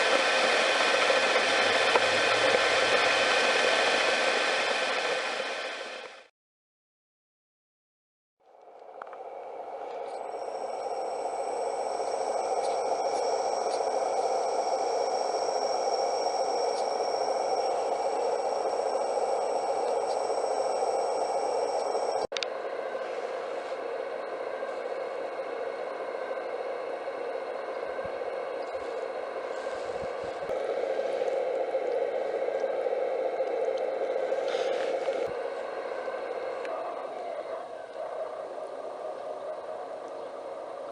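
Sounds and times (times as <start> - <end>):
high electric motor whine: 0.0 - 6.3, 8.5 - 40.9
rushing air noise: 0.0 - 6.3.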